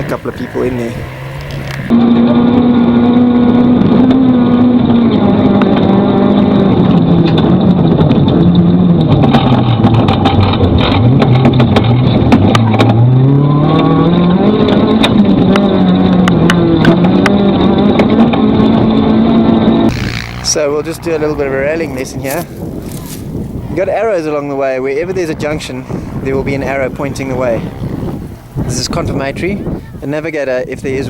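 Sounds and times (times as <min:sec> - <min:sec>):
rally car engine running hard: 0:00.0 - 0:23.7.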